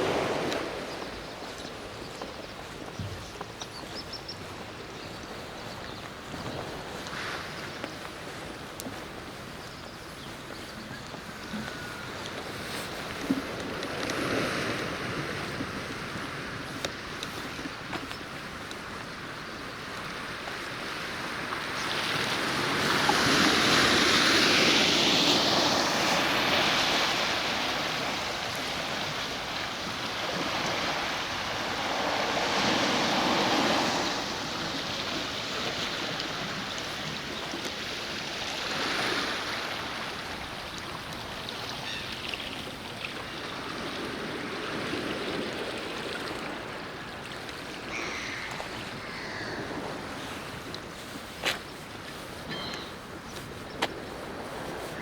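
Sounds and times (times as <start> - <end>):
sea waves breaking ashore: 0.0 - 55.0.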